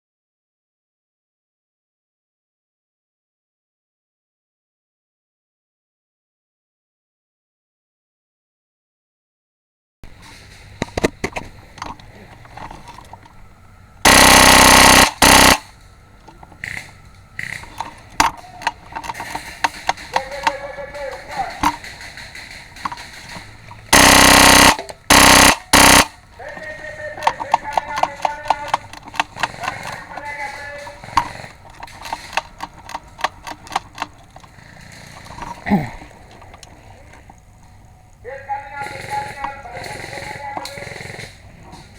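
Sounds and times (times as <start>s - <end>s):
airsoft rifle full-auto bursts: 14.0s - 15.8s, 22.8s - 35.6s, 38.8s - 41.4s
airsoft rifle firing shots: 14.1s - 15.8s, 21.3s - 26.3s.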